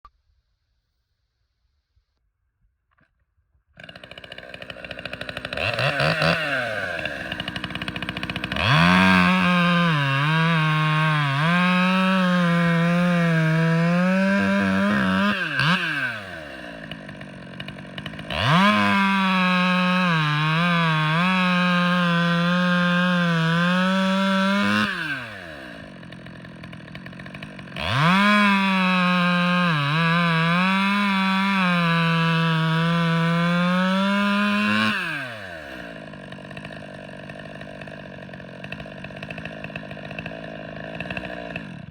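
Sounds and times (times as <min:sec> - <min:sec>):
chainsaw cutting wood: 0:03.8 - 0:41.9.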